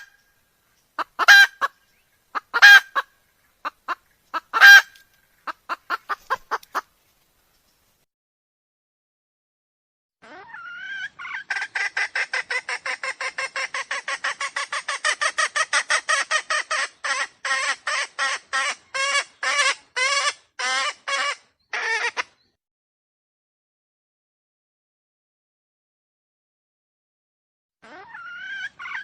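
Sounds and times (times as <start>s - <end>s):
wild chicken clucking: 0.0s - 7.0s, 10.2s - 22.6s, 27.8s - 29.0s.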